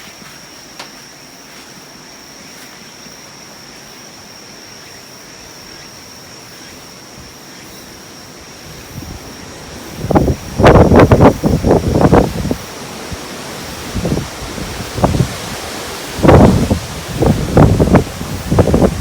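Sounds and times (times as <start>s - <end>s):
wind hiss: 0.0s - 19.0s
wind gusts buffeting microphone: 8.4s - 19.0s.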